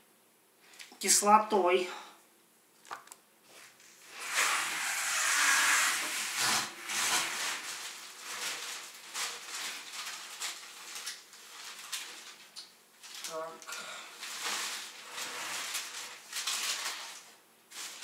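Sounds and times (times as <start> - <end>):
plastic bags rustling: 6.1 - 18.0.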